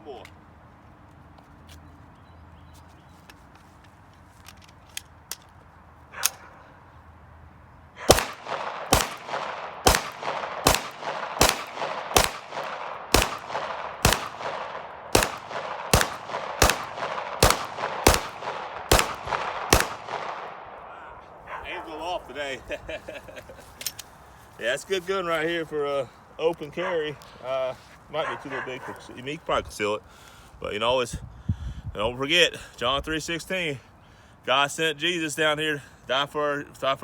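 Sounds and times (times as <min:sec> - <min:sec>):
pistol shots with echo: 0:08.1 - 0:21.1.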